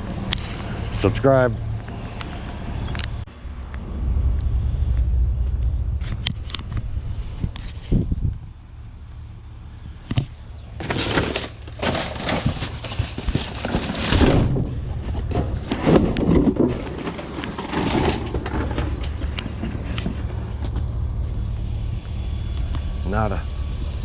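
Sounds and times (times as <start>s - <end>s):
low rumble: 0.0s - 24.0s
rustling and crackling of trash bags: 10.7s - 20.7s.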